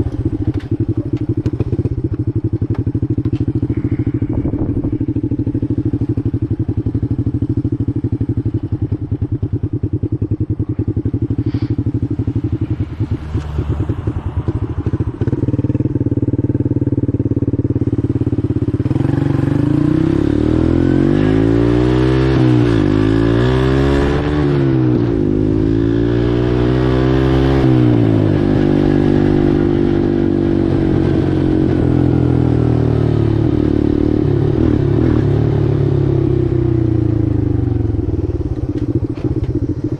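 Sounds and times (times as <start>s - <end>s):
atv engine revving: 0.0s - 39.9s.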